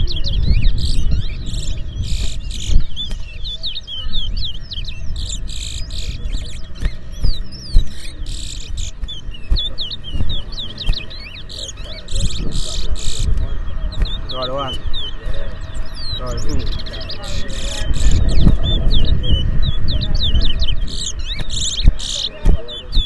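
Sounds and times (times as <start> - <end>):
songbirds chirping and singing: 0.0 - 23.0.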